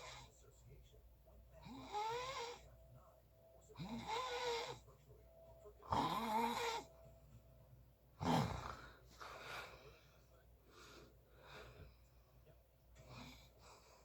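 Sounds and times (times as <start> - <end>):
loud rough snoring: 1.6 - 2.6, 3.8 - 4.8, 8.2 - 8.8.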